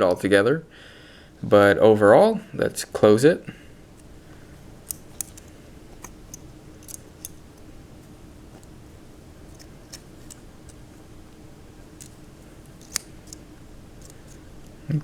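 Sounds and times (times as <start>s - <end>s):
switchblade metallic clicks: 12.0s - 13.4s.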